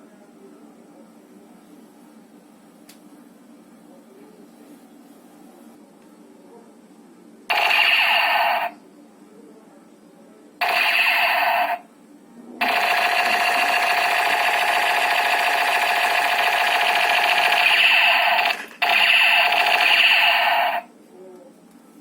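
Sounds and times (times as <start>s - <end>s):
toy gun electronic sound effect: 7.5s - 8.8s, 10.6s - 11.8s, 12.6s - 20.9s.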